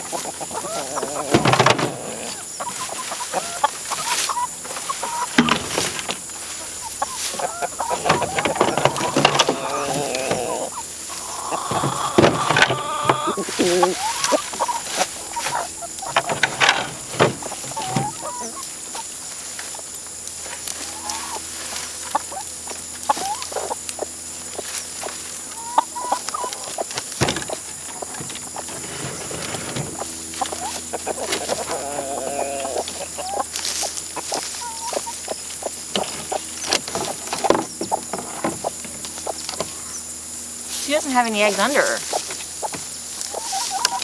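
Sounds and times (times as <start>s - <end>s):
chickens clucking: 0.0s - 44.0s
knocks and rustles: 1.1s - 2.1s, 3.8s - 10.5s, 11.6s - 18.3s, 26.9s - 31.8s, 35.8s - 39.8s.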